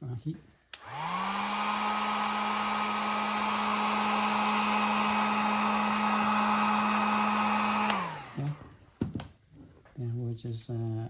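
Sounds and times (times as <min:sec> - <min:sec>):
hot-air blower running: 0:00.8 - 0:08.7.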